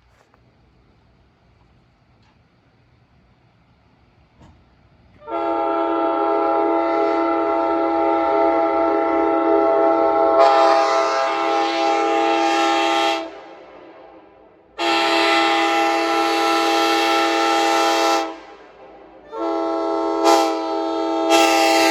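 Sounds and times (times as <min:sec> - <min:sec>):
locomotive air horn chord: 0:05.2 - 0:13.7, 0:14.8 - 0:21.9.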